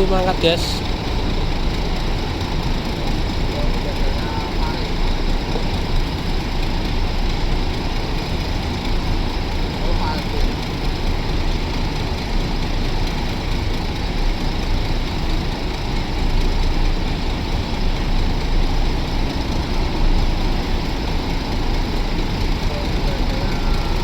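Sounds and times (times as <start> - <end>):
bus diesel engine running: 0.0 - 24.0.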